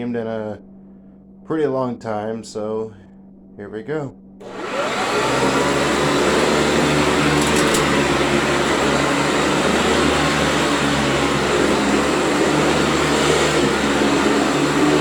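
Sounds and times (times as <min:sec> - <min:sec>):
vacuum cleaner running: 0:04.4 - 0:15.0.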